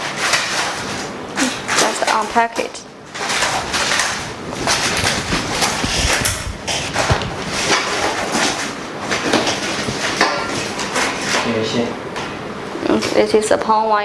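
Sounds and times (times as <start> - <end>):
packaging rustling: 3.1 - 11.4
knocks and clatter: 3.1 - 11.5.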